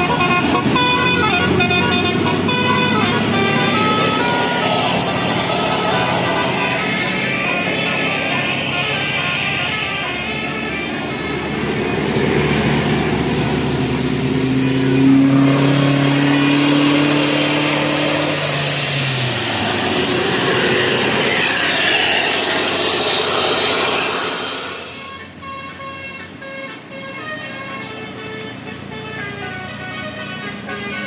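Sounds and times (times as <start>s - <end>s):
bus engine passing: 0.0s - 31.0s.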